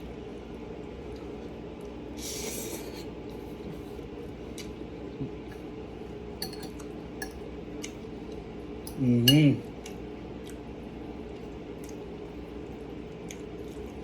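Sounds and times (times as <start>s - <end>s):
utensil clinking against dish: 6.4s - 7.4s.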